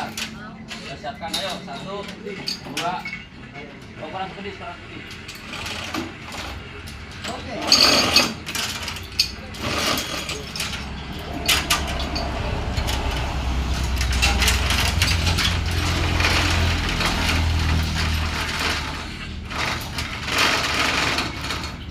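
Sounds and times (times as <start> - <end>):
hoist chain rattling: 5.1 - 21.9
ratchet clicking rapidly: 8.0 - 21.9.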